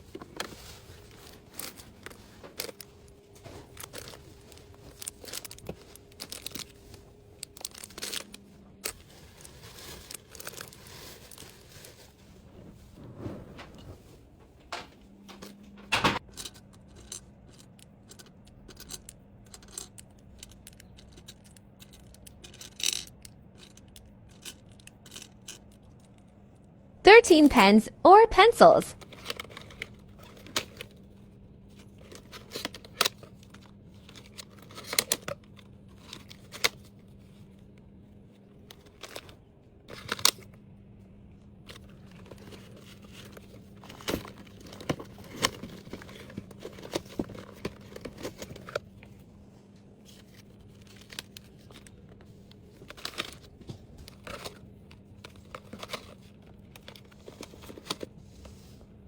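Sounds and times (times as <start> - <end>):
faint steady hum: 0.0 - 59.0
plastic packaging crinkling: 0.1 - 12.5.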